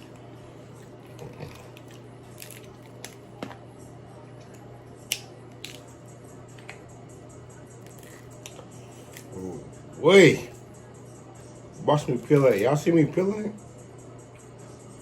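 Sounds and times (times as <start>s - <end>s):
steady low hum: 0.0s - 15.0s
seafood shells cracking: 1.0s - 3.2s, 5.1s - 5.9s.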